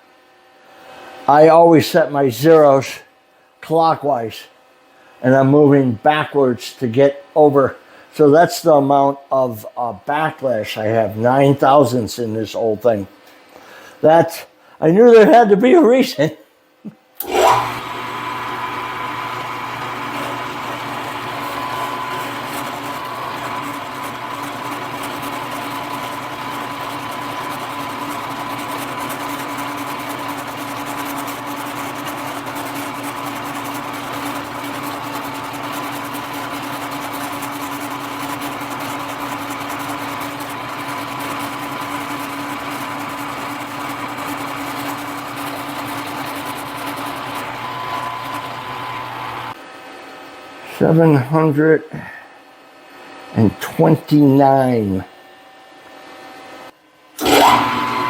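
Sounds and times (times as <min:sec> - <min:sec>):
milling machine motor humming: 0:17.2 - 0:49.6, 0:57.2 - 0:58.0
motor whine: 0:17.2 - 0:49.6, 0:57.2 - 0:58.0.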